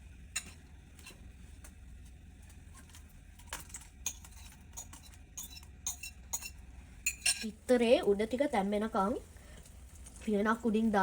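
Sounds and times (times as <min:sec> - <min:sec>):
utensils clinking on bowl and pan: 0:03.5 - 0:07.6.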